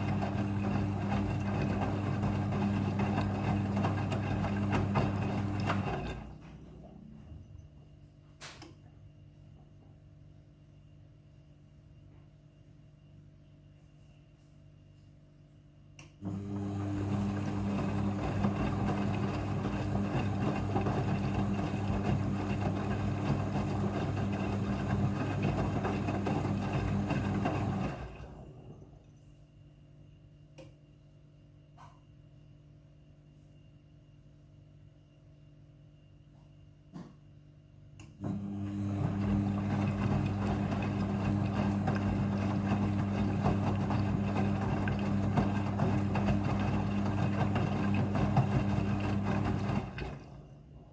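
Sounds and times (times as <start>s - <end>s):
water rushing through washing machine: 0.0s - 6.4s, 16.2s - 28.7s, 38.2s - 50.6s.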